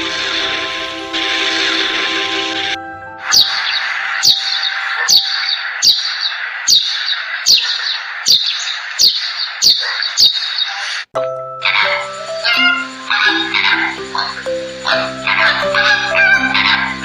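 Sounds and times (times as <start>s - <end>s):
background hiss: 0.0s - 6.7s, 11.2s - 17.0s
bird calling: 0.0s - 11.0s, 11.7s - 17.0s.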